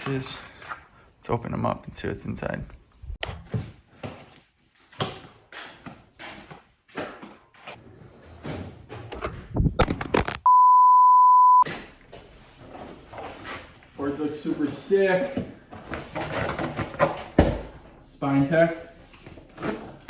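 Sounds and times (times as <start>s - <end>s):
censor bleep: 10.5s - 11.6s.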